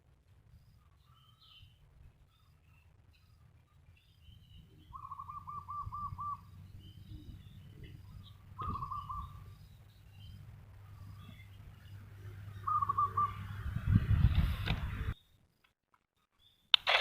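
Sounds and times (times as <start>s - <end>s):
steady low hum: 0.0s - 15.6s
small birds chirping faintly: 0.0s - 17.0s
bird calling repeated notes: 4.8s - 6.6s, 8.0s - 9.6s, 12.5s - 13.6s.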